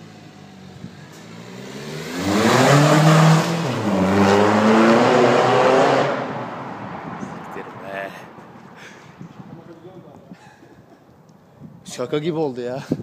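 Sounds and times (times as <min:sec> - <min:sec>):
diesel car engine accelerating: 0:00.0 - 0:07.0.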